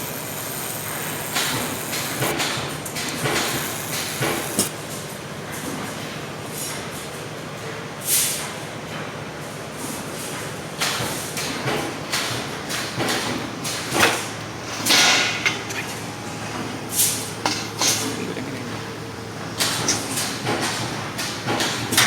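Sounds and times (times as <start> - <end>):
hisses: 0.0 - 4.7
machinery hum: 0.0 - 4.7.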